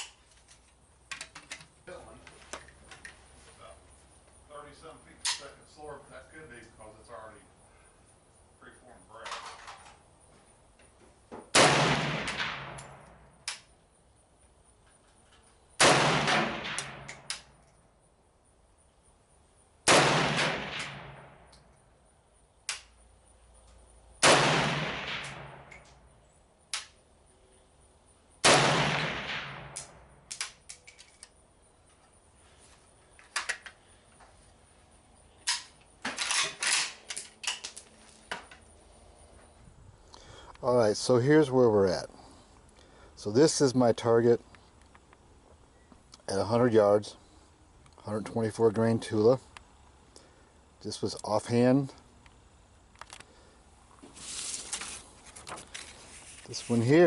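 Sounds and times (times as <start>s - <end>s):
rifle shots with echo: 11.5s - 13.2s, 15.8s - 17.5s, 19.9s - 21.5s, 24.2s - 25.7s, 28.4s - 30.0s.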